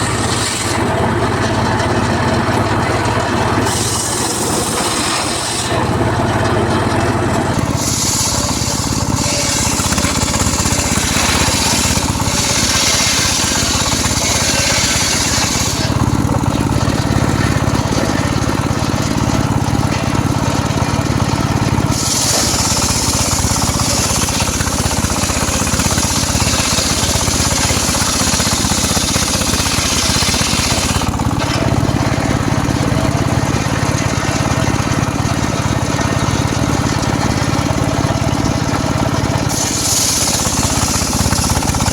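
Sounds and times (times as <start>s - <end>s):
circular saw cutting wood: 0.0s - 41.9s.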